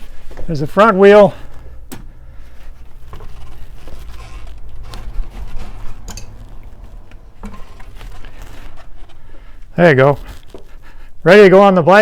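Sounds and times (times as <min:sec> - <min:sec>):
faint clicks and scrapes: 0:02.5 - 0:11.1.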